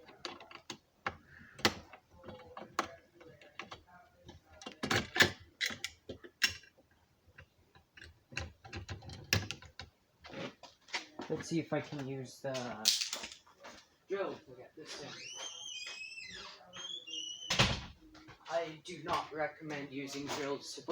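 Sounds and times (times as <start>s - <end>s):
plastic and metal clicks and rattles: 0.0s - 9.9s.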